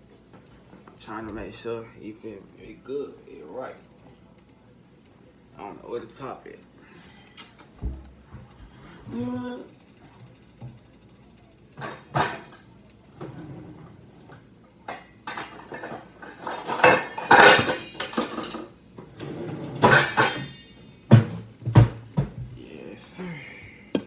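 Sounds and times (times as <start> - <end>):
metal cookware clanking: 11.8 - 22.4.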